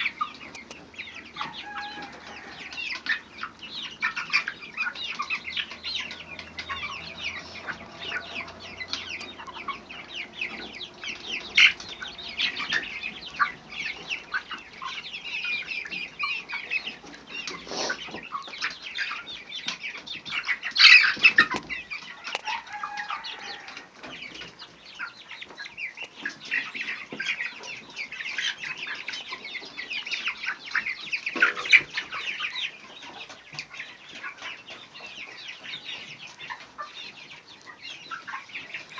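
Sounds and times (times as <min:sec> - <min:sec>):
quail calling and clucking: 0:00.0 - 0:38.9
rapid patter of ticks: 0:00.2 - 0:01.0.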